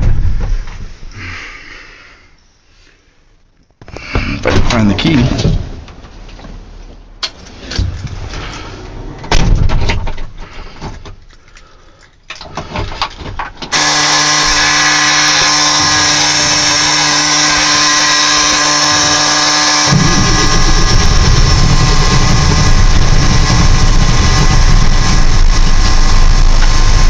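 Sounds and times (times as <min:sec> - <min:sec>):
knocks and clatter in truck cab: 0:00.0 - 0:01.0, 0:09.3 - 0:10.4
diesel starter cranking: 0:12.2 - 0:27.0
diesel engine rumbling: 0:13.7 - 0:27.0.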